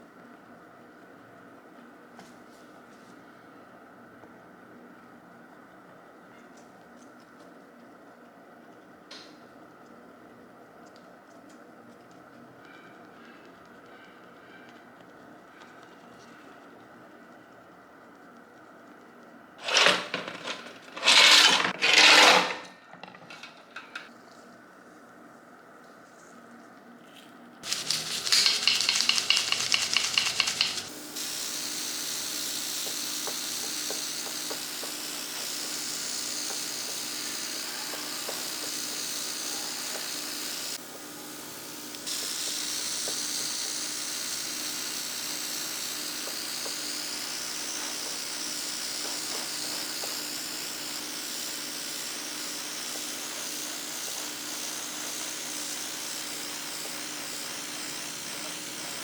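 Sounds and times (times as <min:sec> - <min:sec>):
loud rapid mechanical buzzing: 0:19.6 - 0:22.5, 0:27.6 - 0:59.0
spraying hiss: 0:27.6 - 0:40.8.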